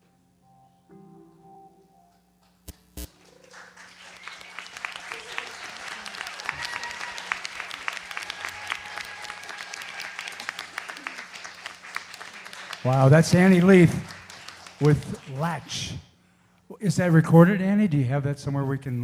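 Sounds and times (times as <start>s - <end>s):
audience applause: 3.1s - 15.9s.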